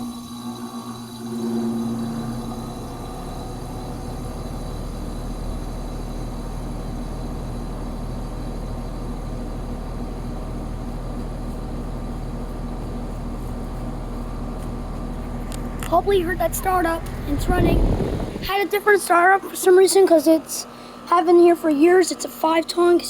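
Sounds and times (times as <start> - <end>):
humming tone: 0.0 - 8.4, 14.2 - 18.5
air conditioner compressor and fan drone: 0.0 - 23.0.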